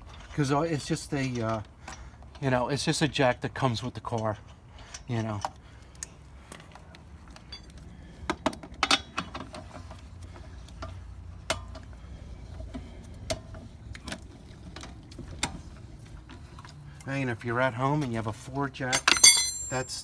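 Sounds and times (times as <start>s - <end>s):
metal clicks and clinks: 18.9s - 20.0s.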